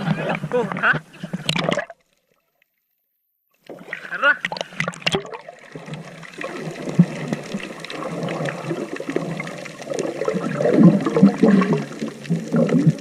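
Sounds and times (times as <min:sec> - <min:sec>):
seawater sloshing and gurgling: 0:03.7 - 0:13.0.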